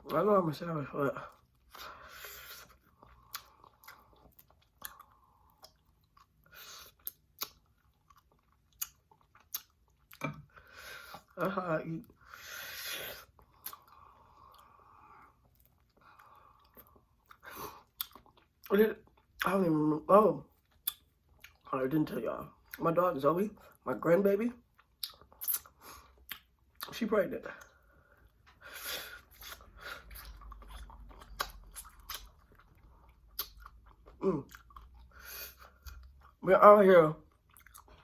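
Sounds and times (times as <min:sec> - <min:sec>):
person chewing: 0:01.2 - 0:19.5, 0:20.5 - 0:21.7, 0:24.6 - 0:27.0, 0:27.6 - 0:36.4, 0:37.2 - 0:38.0
wet mouth clicks: 0:06.9 - 0:07.7, 0:25.0 - 0:26.9, 0:29.3 - 0:32.4, 0:33.2 - 0:34.8.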